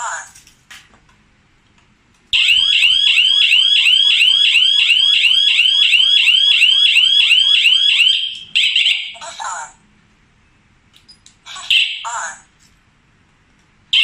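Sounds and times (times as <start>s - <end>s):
electronic alarm siren whooping: 2.4s - 9.2s.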